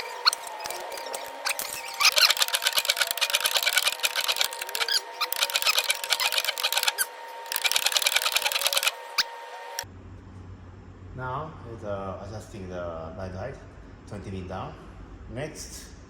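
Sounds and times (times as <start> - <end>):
hand ratchet clicking: 0.0 - 9.0.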